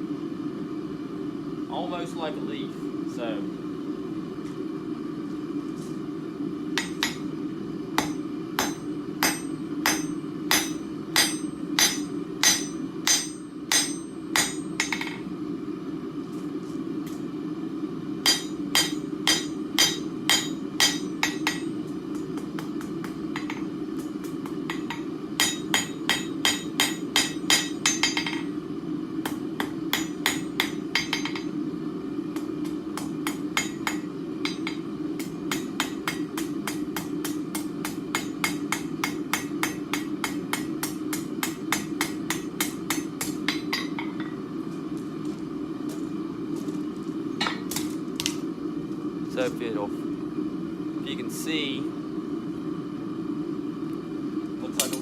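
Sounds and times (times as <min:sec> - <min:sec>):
steady low hum: 0:00.0 - 0:55.0
hammer striking steel on anvil: 0:06.8 - 0:07.3, 0:08.0 - 0:15.2, 0:18.2 - 0:28.5, 0:29.3 - 0:31.6, 0:32.4 - 0:44.4.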